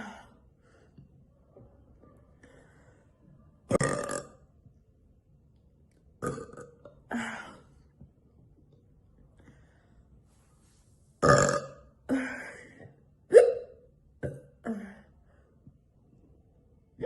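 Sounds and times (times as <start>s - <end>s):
woman burping: 3.7s - 4.4s, 6.2s - 7.7s, 11.2s - 15.1s.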